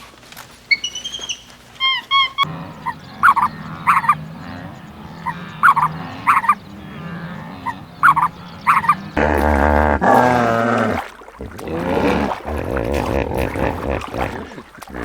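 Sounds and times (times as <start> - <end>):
steady low hum: 0.0 - 15.0
domestic fowl calling: 0.7 - 9.6
animal call with wavering pitch: 0.7 - 15.0.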